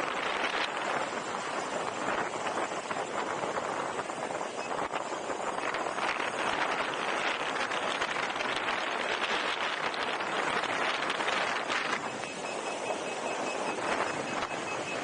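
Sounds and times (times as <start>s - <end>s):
wind rushing over microphone: 0.0s - 15.0s.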